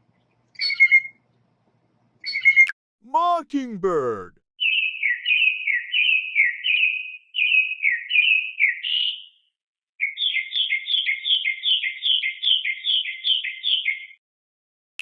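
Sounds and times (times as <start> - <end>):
mockingbird singing: 0.6 - 1.1, 2.2 - 2.7, 4.6 - 9.3.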